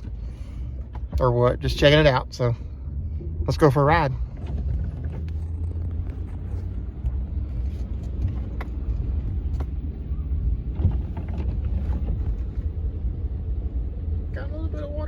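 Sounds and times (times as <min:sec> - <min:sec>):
vehicle engine rumbling: 0:00.0 - 0:15.0
rattles and knocks over rough ground: 0:04.1 - 0:13.1.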